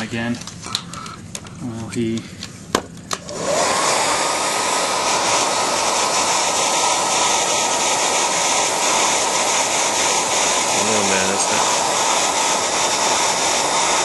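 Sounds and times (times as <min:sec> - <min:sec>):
hair dryer blowing: 0:03.1 - 0:14.0.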